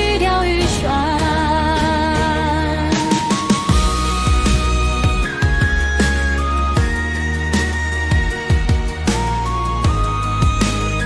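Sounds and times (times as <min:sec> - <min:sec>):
deep bass: 0:00.0 - 0:11.0
drum hits: 0:00.6 - 0:10.9
wavering held melody: 0:00.8 - 0:11.0.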